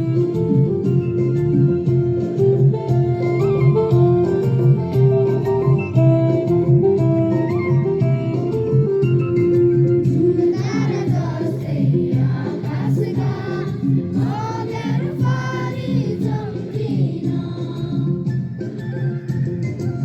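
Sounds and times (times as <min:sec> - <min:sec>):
instrumental accompaniment: 0:00.0 - 0:20.0
group singing in unison: 0:10.3 - 0:18.3.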